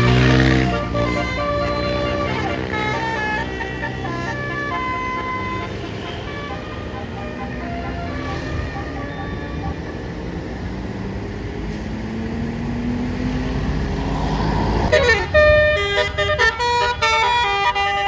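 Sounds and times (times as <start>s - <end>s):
musical air horn tune: 0.0s - 9.8s, 14.9s - 18.0s
bus engine running: 0.0s - 18.0s.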